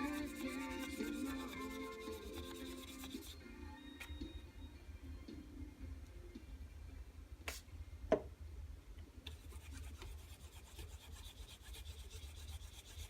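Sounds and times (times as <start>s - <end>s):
fine rubbing against lathe blank: 0.0s - 3.4s, 9.4s - 13.0s.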